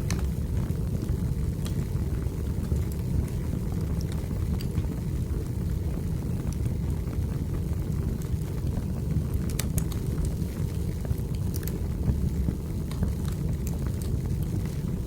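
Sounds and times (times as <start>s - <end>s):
wood fire crackling and popping: 0.0s - 15.0s.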